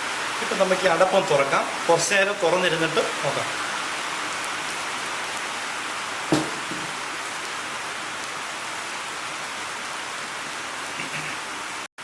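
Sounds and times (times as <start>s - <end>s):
fish parcels sizzling in oil: 0.0s - 11.9s
short knock: 6.3s - 7.0s.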